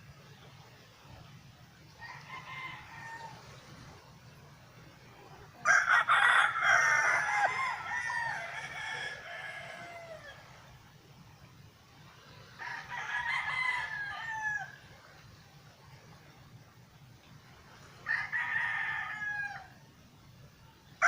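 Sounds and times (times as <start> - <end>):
rooster crowing: 2.0 - 3.6, 5.6 - 10.4, 12.6 - 14.8, 18.0 - 19.8.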